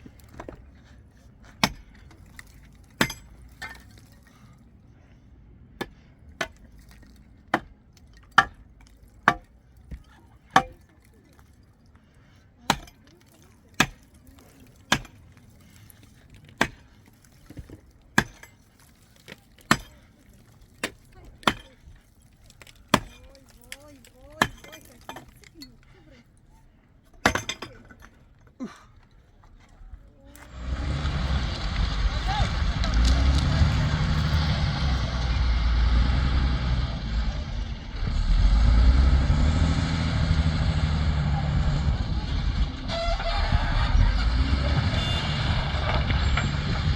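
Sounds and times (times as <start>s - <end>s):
engine rumbling: 29.1s - 46.9s.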